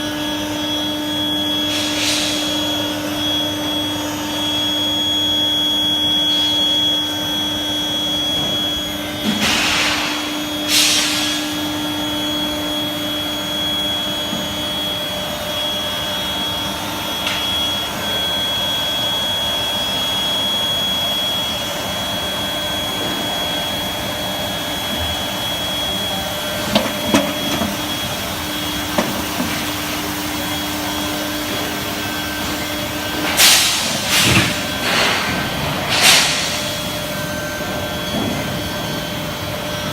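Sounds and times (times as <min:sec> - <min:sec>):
machine whine and hum: 0:00.0 - 0:39.9
metallic clanks: 0:26.6 - 0:29.8.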